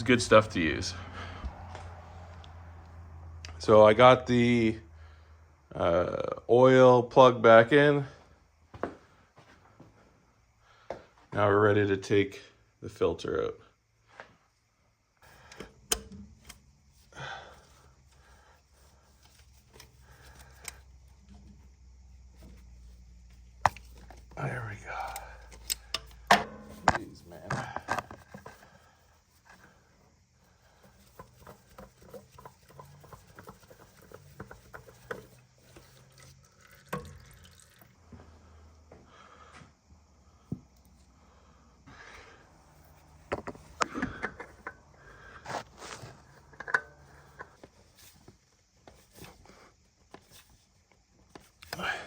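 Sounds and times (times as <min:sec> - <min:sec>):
oil dripping and trickling: 0:15.2 - 0:26.8, 0:27.6 - 0:38.9, 0:42.0 - 0:52.0
low steady hum: 0:15.2 - 0:48.3
rustling scrape: 0:30.4 - 0:36.3, 0:45.4 - 0:48.3.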